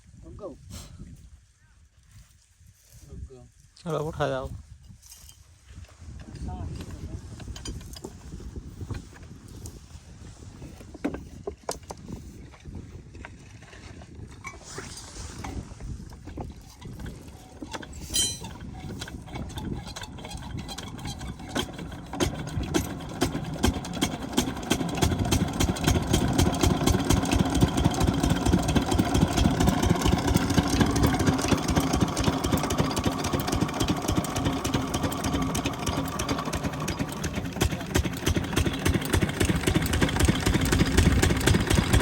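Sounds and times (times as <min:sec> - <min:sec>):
diesel engine starting and running: 0:17.7 - 0:42.0.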